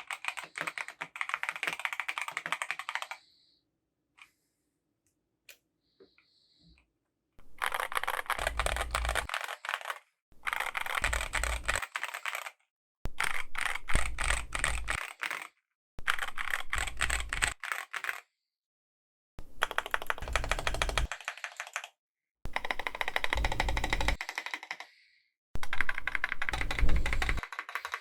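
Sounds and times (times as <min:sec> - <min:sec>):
fast typing on mechanical keyboard: 0:00.0 - 0:03.2, 0:07.5 - 0:18.2, 0:19.6 - 0:24.9, 0:25.6 - 0:28.0.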